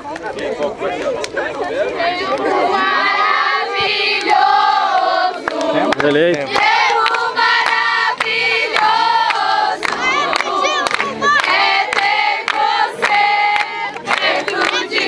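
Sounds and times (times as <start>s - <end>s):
group singing a chant: 1.8s - 15.0s
hand claps: 4.2s - 15.0s.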